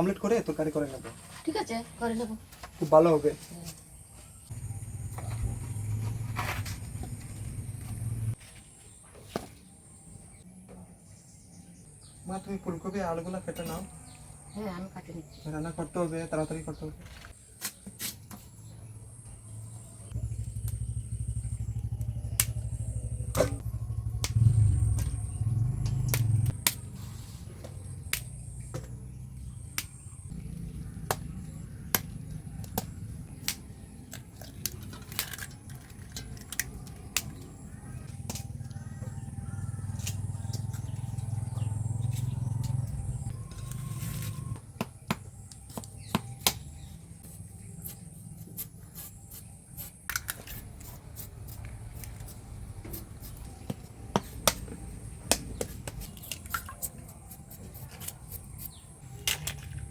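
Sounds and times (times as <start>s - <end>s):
knife cutting vegetables: 55.4s - 58.9s.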